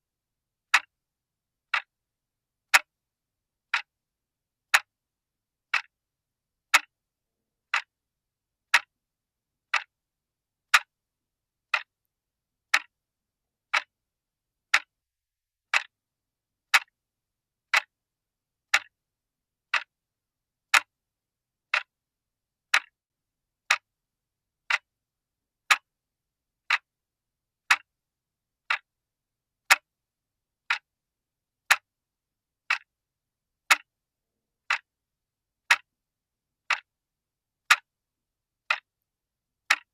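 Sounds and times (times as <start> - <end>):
clock ticking: 0.7 - 0.9, 1.7 - 1.9, 2.7 - 2.9, 3.7 - 3.9, 4.7 - 4.9, 5.7 - 5.9, 6.7 - 6.9, 7.7 - 8.0, 8.7 - 8.9, 9.7 - 9.9, 10.7 - 11.0, 11.7 - 12.0, 12.7 - 13.0, 13.7 - 14.0, 14.7 - 15.0, 15.7 - 16.0, 16.7 - 17.0, 17.7 - 18.0, 18.7 - 19.0, 19.7 - 20.0, 20.7 - 21.0, 21.7 - 22.0, 22.7 - 23.0, 23.7 - 23.9, 24.7 - 24.9, 25.7 - 25.9, 26.7 - 26.9, 27.7 - 27.9, 28.7 - 28.9, 29.7 - 29.9, 30.7 - 30.9, 31.7 - 31.9, 32.7 - 32.9, 33.7 - 33.9, 34.6 - 34.9, 35.7 - 35.9, 36.7 - 36.9, 37.7 - 37.9, 38.7 - 38.9, 39.7 - 39.9.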